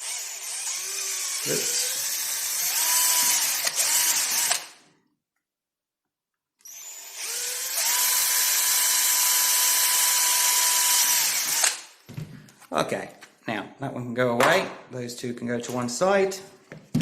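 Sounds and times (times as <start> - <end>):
power drill boring a hole: 0.0 - 4.8, 6.6 - 11.9.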